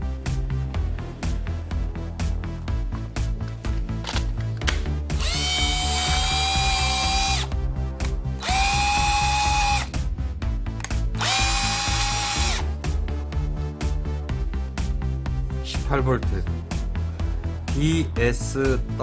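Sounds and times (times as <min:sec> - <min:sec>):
cordless drill motor whining: 0:05.2 - 0:07.5, 0:08.4 - 0:09.9, 0:11.2 - 0:12.7.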